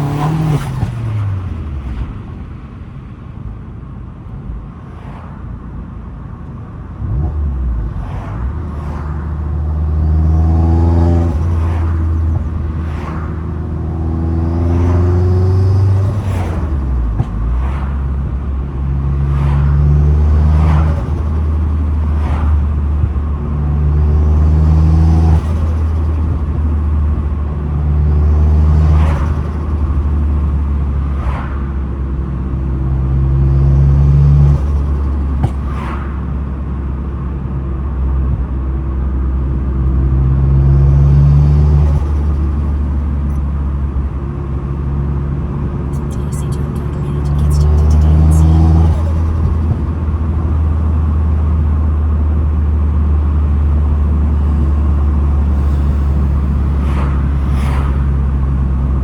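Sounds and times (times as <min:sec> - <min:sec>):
car engine revving: 0:00.0 - 0:02.5, 0:07.0 - 0:36.0, 0:39.7 - 0:59.0
turbo flutter chatter: 0:46.0 - 0:49.4.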